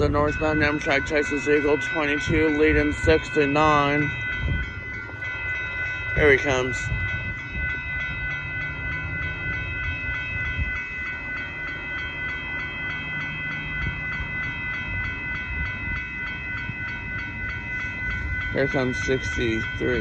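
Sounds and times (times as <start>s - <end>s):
railroad crossing bell ringing: 0.0s - 20.0s
train rumble: 0.0s - 20.0s.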